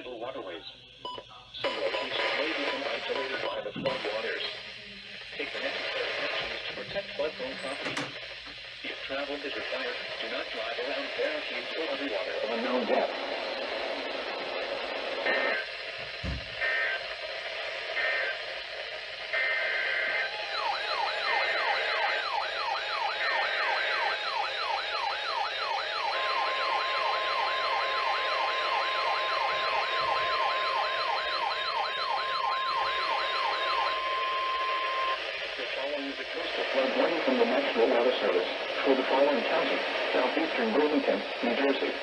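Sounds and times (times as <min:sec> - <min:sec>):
steady warning alarm tone: 0:06.8 - 0:08.2, 0:19.3 - 0:35.2
siren alert sweeping up: 0:20.2 - 0:35.2.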